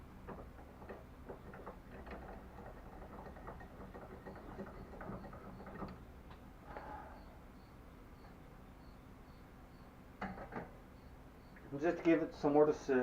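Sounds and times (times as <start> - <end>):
bicycle parts clicking and knocking: 10.2 - 10.7.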